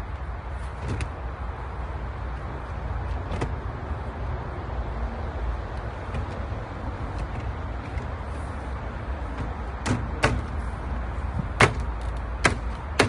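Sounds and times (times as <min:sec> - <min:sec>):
steady low rumble: 0:00.0 - 0:13.0
hollow plastic parts knocking: 0:11.4 - 0:13.0.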